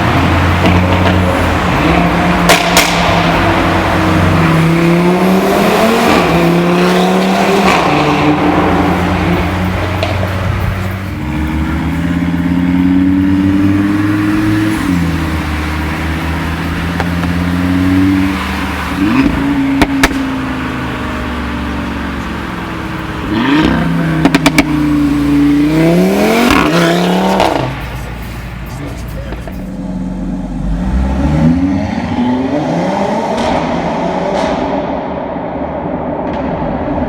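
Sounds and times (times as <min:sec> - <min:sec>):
exhaust crackles: 0:00.0 - 0:34.8
car engine accelerating: 0:00.0 - 0:37.0.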